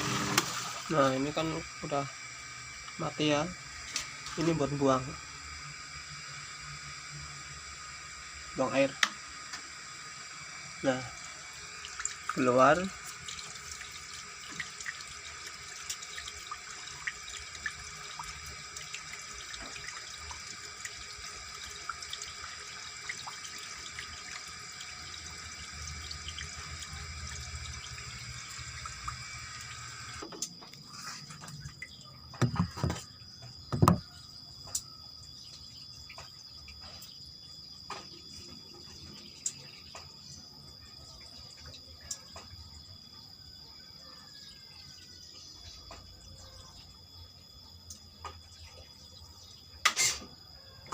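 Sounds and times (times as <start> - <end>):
water draining through hose: 0.0 - 30.3
loud knocks: 33.7 - 34.0.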